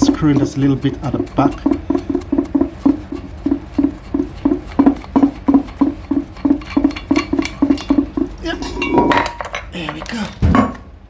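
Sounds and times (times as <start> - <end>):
screwdriver rasping: 0.0 - 8.5.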